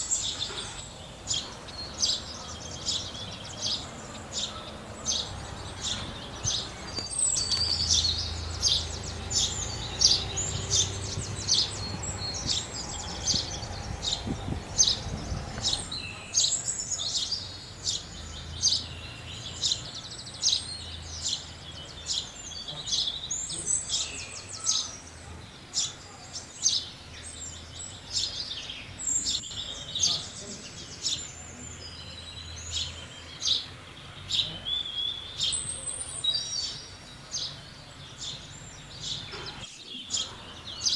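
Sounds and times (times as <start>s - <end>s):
sparrows chirping: 0.0s - 40.9s.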